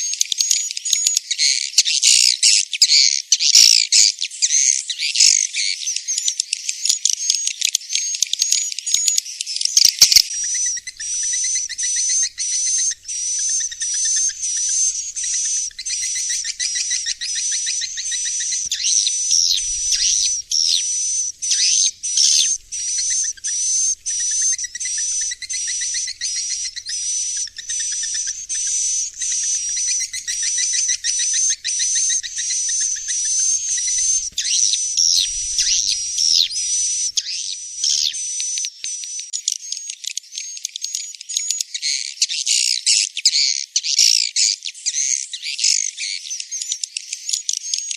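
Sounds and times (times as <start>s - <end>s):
swiftlet twittering chirps: 9.9s - 38.4s.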